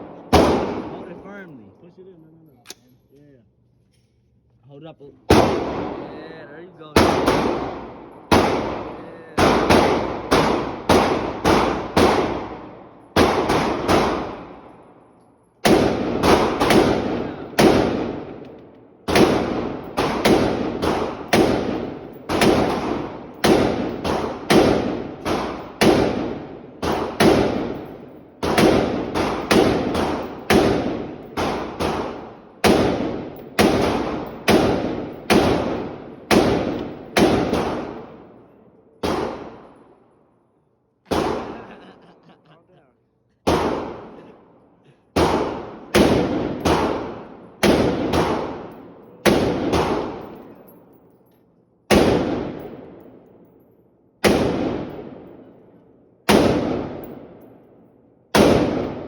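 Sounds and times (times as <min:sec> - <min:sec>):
rifle shots with echo: 0:00.0 - 0:01.5, 0:05.3 - 0:15.0, 0:15.6 - 0:40.2, 0:41.1 - 0:41.9, 0:43.4 - 0:44.5, 0:45.1 - 0:51.2, 0:51.9 - 0:59.0.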